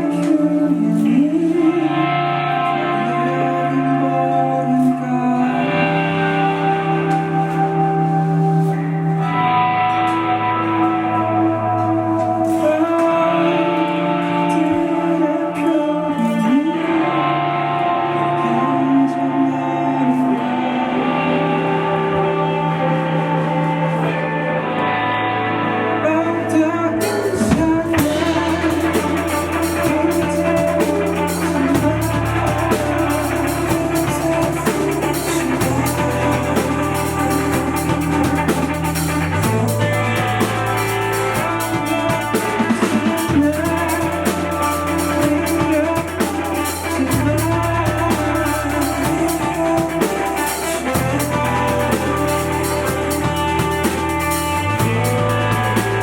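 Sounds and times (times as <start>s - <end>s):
bass line: 0.0s - 56.0s
rock band playing live: 0.0s - 56.0s
drum kit: 5.7s - 15.0s, 27.0s - 56.0s.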